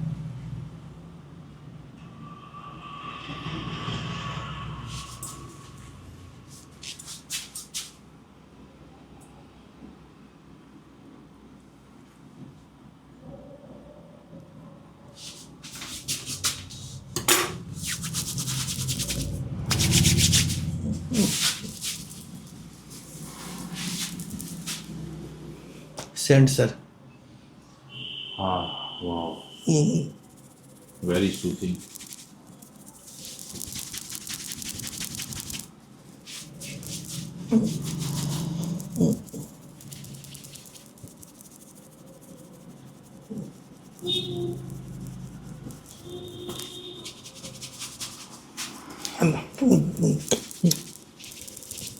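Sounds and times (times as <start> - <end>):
hands rubbing scalp: 4.9 - 5.6, 6.5 - 8.0, 15.2 - 17.1, 17.7 - 25.0, 29.9 - 51.9.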